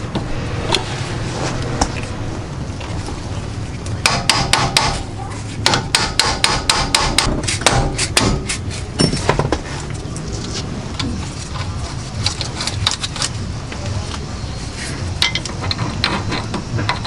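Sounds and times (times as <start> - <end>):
hammer striking: 4.0 - 5.0, 5.6 - 9.6.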